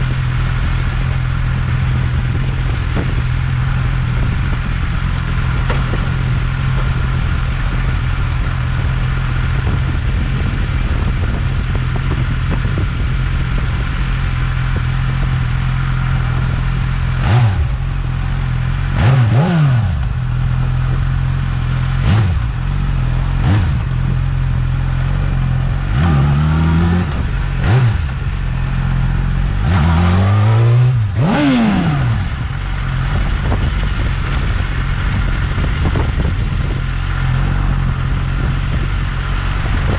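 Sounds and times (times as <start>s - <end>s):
motorcycle engine idling and revving: 0.0s - 39.9s.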